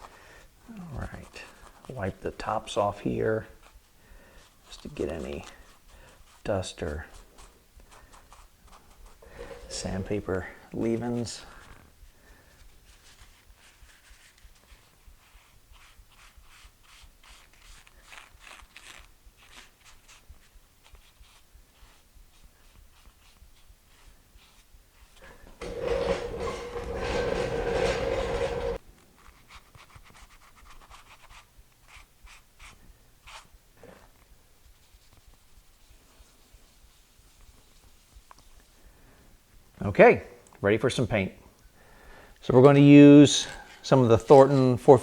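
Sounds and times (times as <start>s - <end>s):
rag rubbing on metal: 9.2s - 10.3s, 25.6s - 28.8s.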